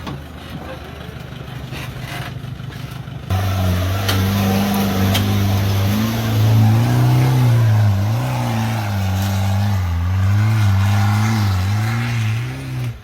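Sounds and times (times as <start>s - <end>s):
truck engine revving: 3.3s - 13.0s.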